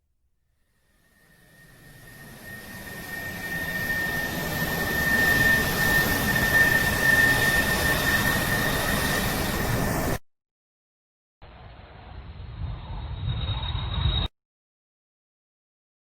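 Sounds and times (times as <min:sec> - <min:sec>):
high-pitched engine whine: 0:00.7 - 0:10.2, 0:11.5 - 0:14.3
jet airplane engine rushing: 0:01.1 - 0:10.2.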